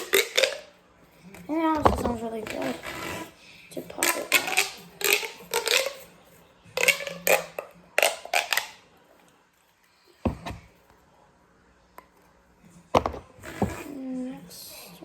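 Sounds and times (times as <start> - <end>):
plastic pop tube popping: 0.0 - 0.7, 4.0 - 6.1, 6.8 - 8.8.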